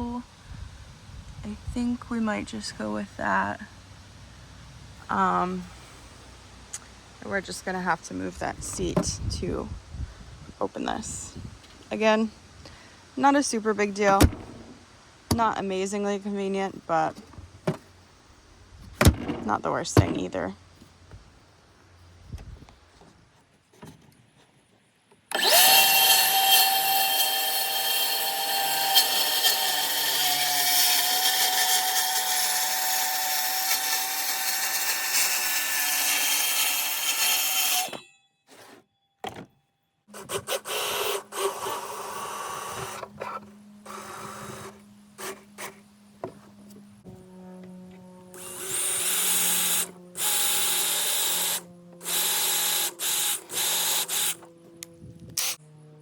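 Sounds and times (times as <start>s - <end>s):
power tool running: 25.3s - 38.0s, 47.0s - 55.8s.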